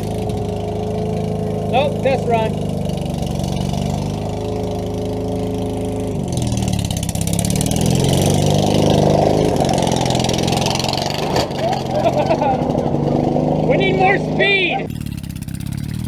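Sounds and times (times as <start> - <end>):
riding lawn mower engine: 0.0 - 16.0.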